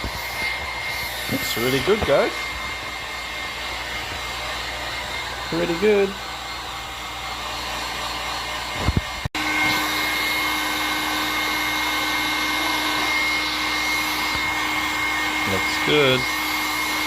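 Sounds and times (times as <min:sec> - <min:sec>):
heat gun blowing: 0:00.0 - 0:17.0.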